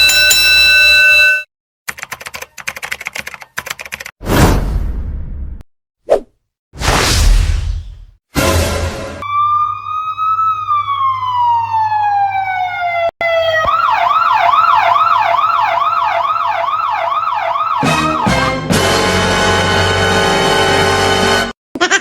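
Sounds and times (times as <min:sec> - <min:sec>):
police siren wail and yelp: 0:09.2 - 0:18.6.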